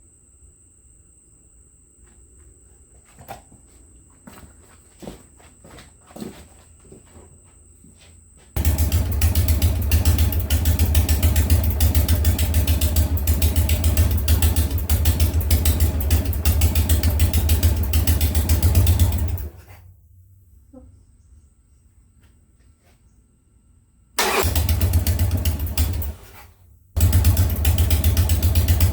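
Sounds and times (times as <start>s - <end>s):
motorcycle engine running: 8.6s - 19.7s, 24.2s - 28.9s.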